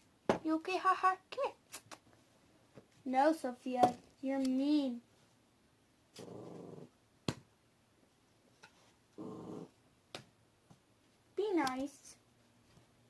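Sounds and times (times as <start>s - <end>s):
dog growling: 6.2s - 6.9s, 9.2s - 9.8s.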